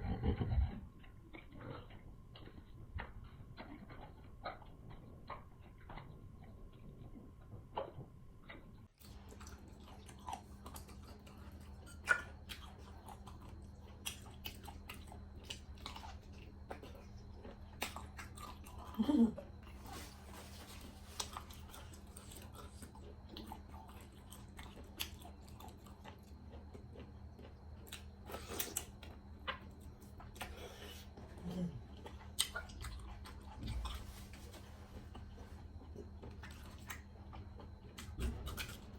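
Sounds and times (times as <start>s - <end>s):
wet chewing mouth sounds: 0.0s - 38.9s.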